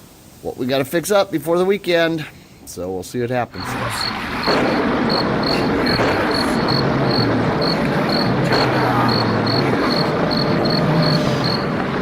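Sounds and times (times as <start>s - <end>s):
steady rushing noise: 2.8s - 12.0s
crickets chirping: 3.2s - 12.0s.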